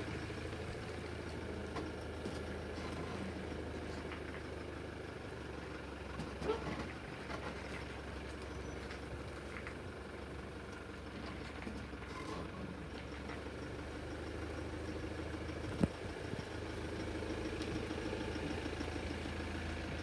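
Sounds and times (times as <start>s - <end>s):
car engine humming: 0.0s - 12.0s.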